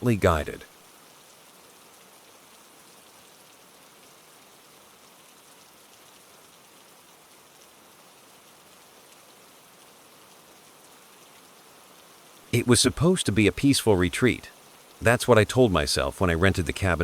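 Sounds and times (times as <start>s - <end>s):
rain hissing: 0.0s - 3.1s, 11.5s - 17.0s.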